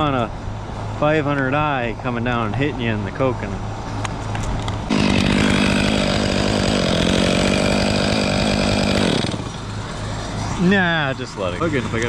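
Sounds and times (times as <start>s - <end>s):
chainsaw cutting wood: 4.9s - 10.6s.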